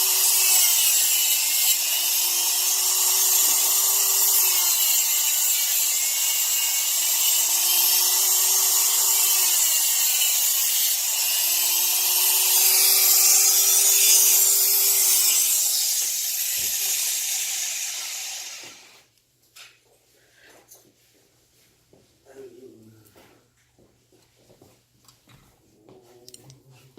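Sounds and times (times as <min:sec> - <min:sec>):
power tool motor cutting: 0:00.0 - 0:19.0.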